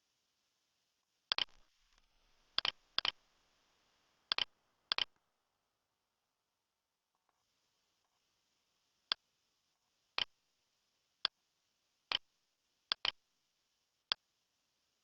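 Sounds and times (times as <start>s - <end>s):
faint steady hiss: 0.0s - 15.0s
sharp short clicks: 12.9s - 13.2s.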